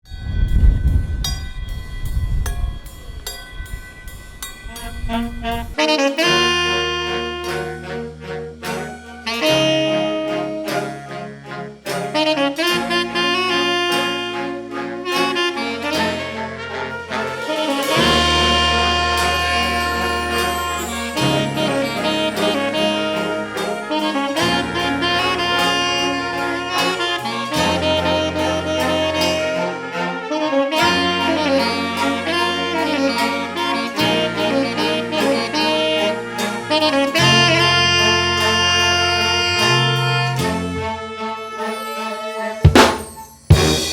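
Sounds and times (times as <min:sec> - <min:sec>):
low brass bass line: 0:04.6 - 0:41.4
brass band playing upbeat tune: 0:04.7 - 0:43.9
drums keeping steady beat: 0:17.3 - 0:28.9, 0:42.6 - 0:43.9.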